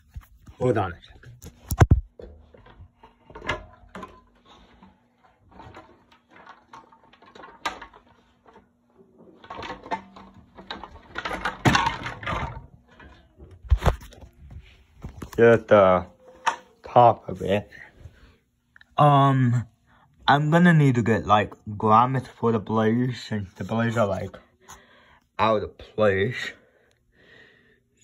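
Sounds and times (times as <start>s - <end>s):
clattering and scraping: 2.2s - 15.4s.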